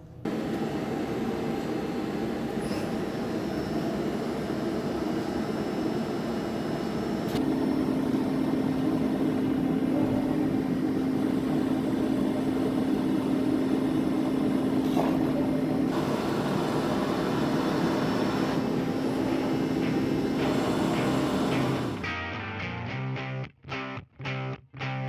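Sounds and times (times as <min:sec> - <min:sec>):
lathe machine hum: 0:00.0 - 0:22.1.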